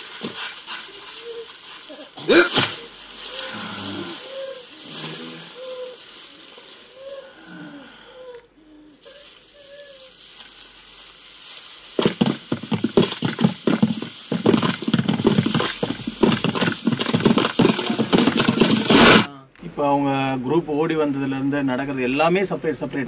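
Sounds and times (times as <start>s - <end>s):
running footsteps: 0.0s - 6.9s, 9.1s - 19.3s
scuffles and crunching impacts: 0.0s - 7.1s, 9.1s - 19.3s
faint hiss: 0.0s - 23.0s.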